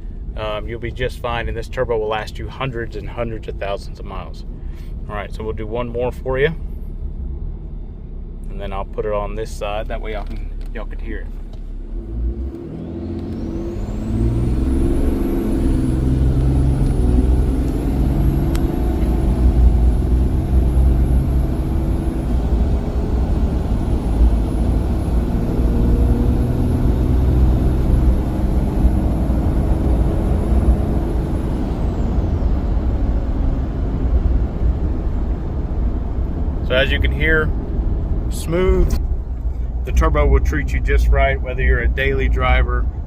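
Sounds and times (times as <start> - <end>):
diesel engine accelerating: 0.0 - 43.0
turbocharger whistling: 11.8 - 38.9.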